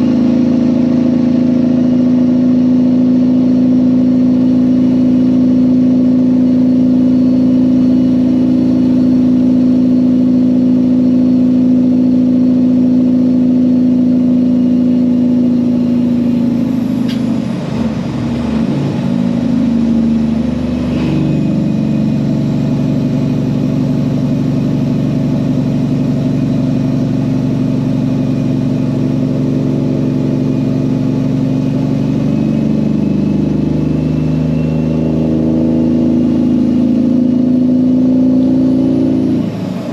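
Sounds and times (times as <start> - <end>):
diesel truck engine running: 0.0 - 39.9
short click: 17.1 - 17.3.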